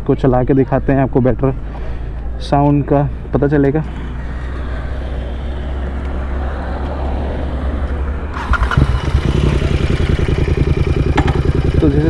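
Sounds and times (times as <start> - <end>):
motorcycle engine idling: 8.4 - 12.0.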